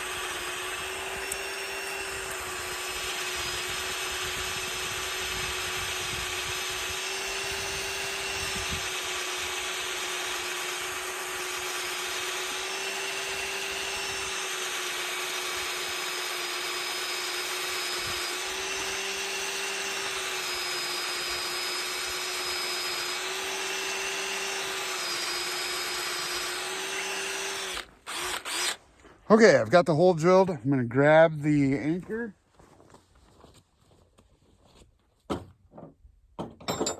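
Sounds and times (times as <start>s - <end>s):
power drill boring into wood: 0.0s - 28.8s.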